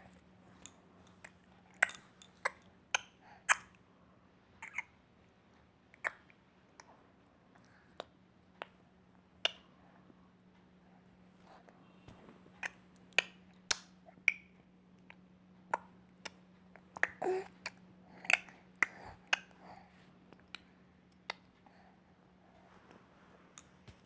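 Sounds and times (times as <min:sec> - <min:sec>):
baby clicking with mouth: 0:00.6 - 0:03.8, 0:15.1 - 0:21.4.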